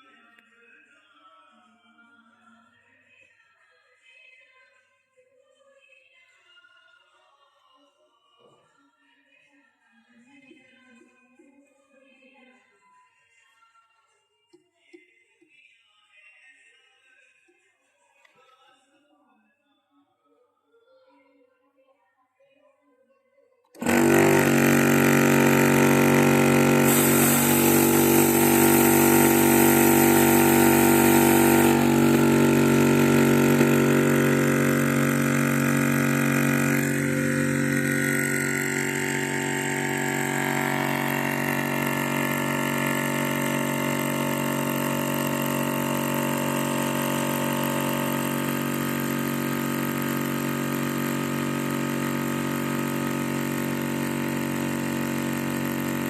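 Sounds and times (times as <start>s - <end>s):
air compressor running: 23.8s - 56.0s.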